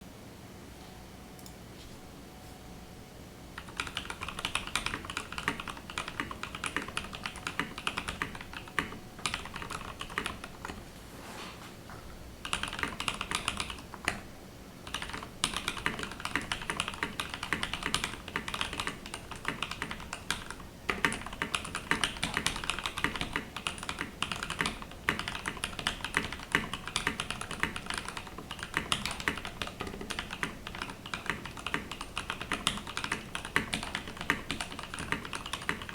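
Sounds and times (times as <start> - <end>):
fast typing on mechanical keyboard: 3.6 - 10.8, 12.4 - 14.2, 14.8 - 35.9.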